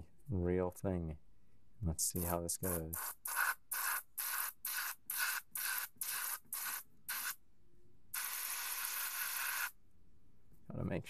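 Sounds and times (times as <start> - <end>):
airbrush hissing bursts: 2.1 - 7.4, 8.1 - 9.8.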